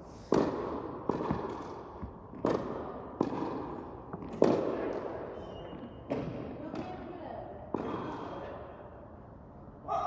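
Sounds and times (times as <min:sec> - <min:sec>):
racket hitting tennis ball: 0:00.3 - 0:05.1
ball bouncing on court: 0:00.4 - 0:05.1.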